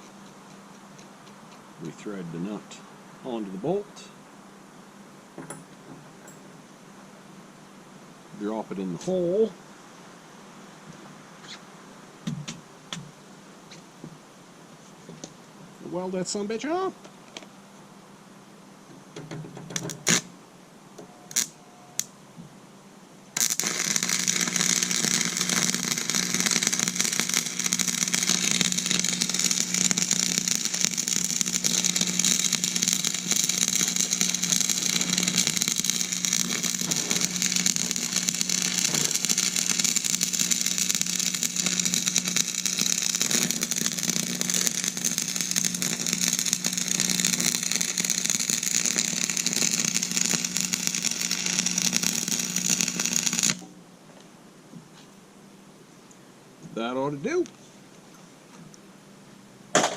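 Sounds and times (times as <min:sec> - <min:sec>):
low welder hum: 0:19.4 - 0:20.4, 0:21.0 - 0:22.1, 0:23.2 - 0:53.8
welding arc crackling: 0:19.7 - 0:20.3, 0:21.3 - 0:22.1, 0:23.4 - 0:53.7.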